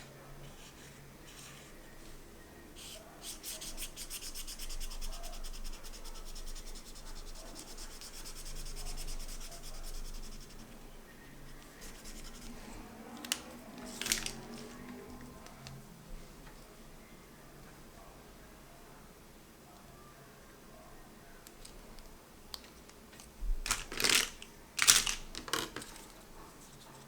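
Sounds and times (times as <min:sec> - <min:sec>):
marker scratching on paper: 0:02.8 - 0:10.7, 0:11.5 - 0:12.7.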